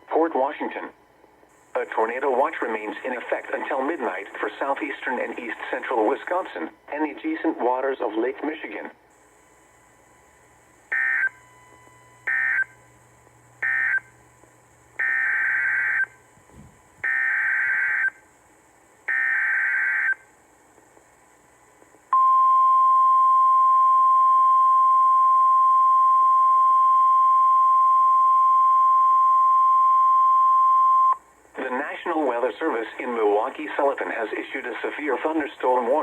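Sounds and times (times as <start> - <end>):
steady warning alarm tone: 10.9 - 12.9, 13.6 - 14.1, 15.0 - 16.2, 17.0 - 18.2, 19.1 - 20.2.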